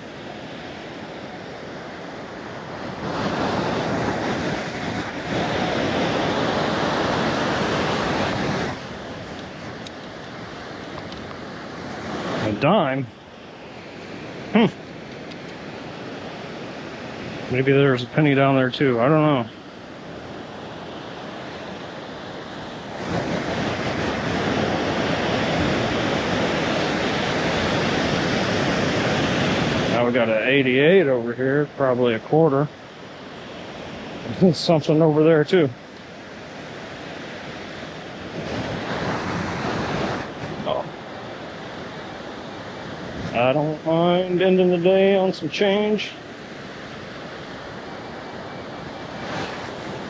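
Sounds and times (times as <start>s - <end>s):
wind on microphone: 0.0s - 13.2s, 19.1s - 30.0s, 37.4s - 44.7s, 47.0s - 50.0s
surf: 0.0s - 50.0s.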